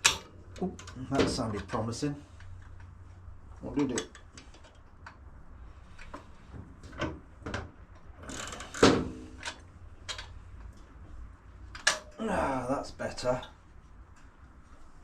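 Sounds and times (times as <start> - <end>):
metal clicks and knocks: 3.7 - 5.2, 11.7 - 12.2.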